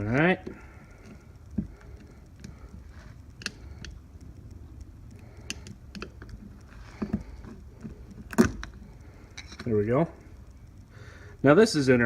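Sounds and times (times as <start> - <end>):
pry tool clicking and scraping metal: 3.3 - 9.7.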